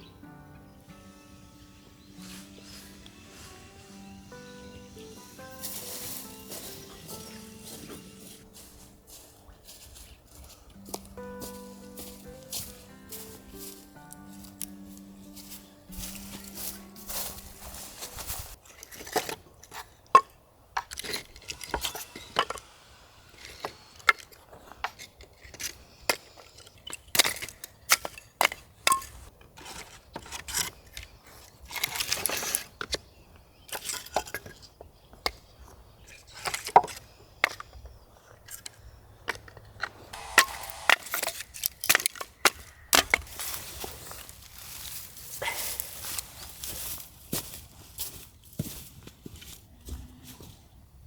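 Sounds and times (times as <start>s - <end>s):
dry wood snapping and crackling: 23.6s - 33.1s, 41.1s - 47.0s.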